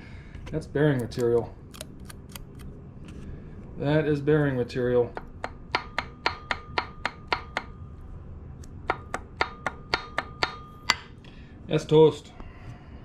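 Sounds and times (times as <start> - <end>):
faint steady ringing tone: 5.9 - 8.4, 9.4 - 11.2.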